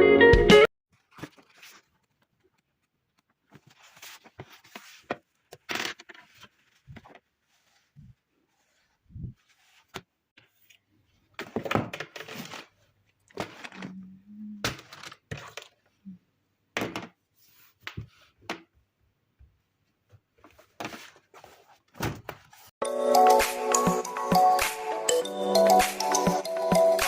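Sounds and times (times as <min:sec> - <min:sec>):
paper rustling and crinkling: 0:00.9 - 0:10.8, 0:11.4 - 0:13.9, 0:20.4 - 0:22.7.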